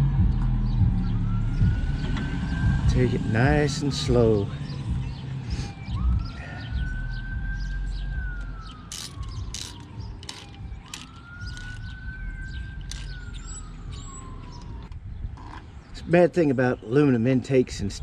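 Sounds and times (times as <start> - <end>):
siren wailing: 0.1 - 15.0
hand ratchet clicking: 8.9 - 11.9, 12.8 - 13.2.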